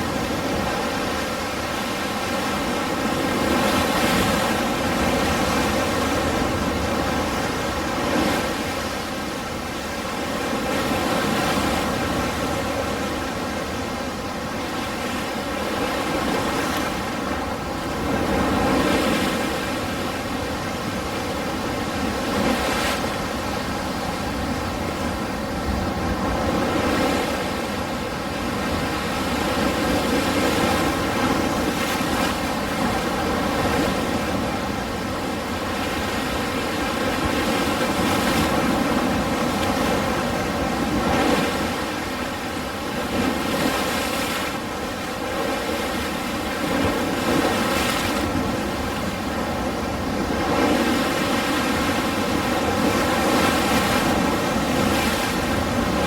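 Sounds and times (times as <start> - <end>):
waves breaking on shore: 0.0 - 56.0.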